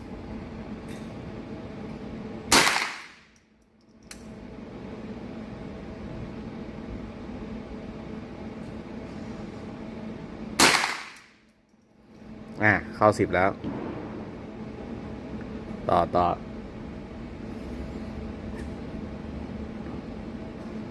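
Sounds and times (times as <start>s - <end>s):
rifle shot: 2.5s - 3.2s, 10.6s - 11.2s, 13.7s - 14.4s.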